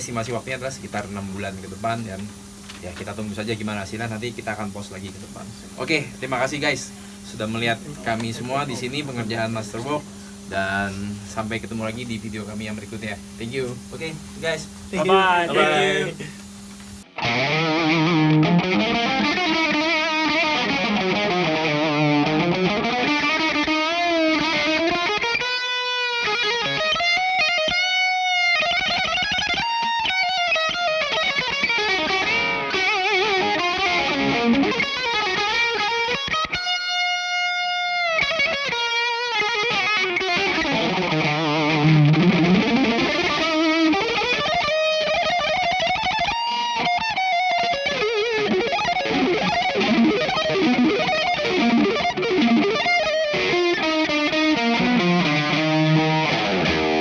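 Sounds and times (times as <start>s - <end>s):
electric guitar lead melody: 17.0s - 57.0s.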